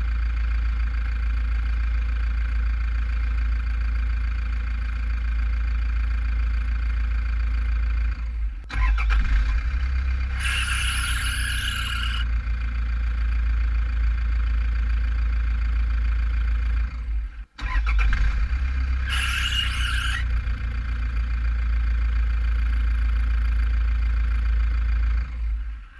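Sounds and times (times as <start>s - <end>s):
diesel engine running: 0.0s - 25.9s
drive belt squealing: 10.3s - 12.4s, 17.6s - 20.5s.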